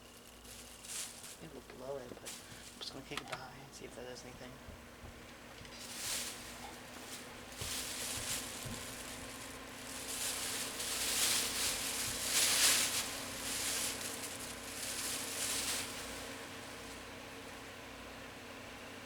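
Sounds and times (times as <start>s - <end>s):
paper rustling: 0.0s - 3.4s, 5.6s - 17.1s
electric fan humming: 0.0s - 19.0s.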